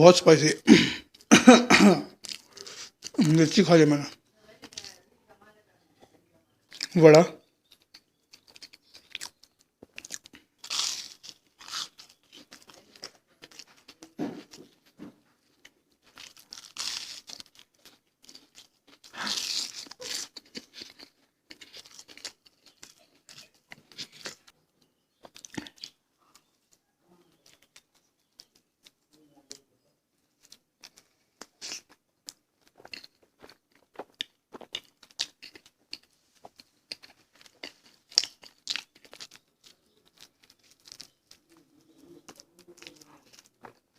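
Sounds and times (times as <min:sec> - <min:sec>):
person chewing and crunching food: 0:00.6 - 0:05.0, 0:06.6 - 0:43.9
wet mouth clicks: 0:25.2 - 0:26.0, 0:30.4 - 0:39.4.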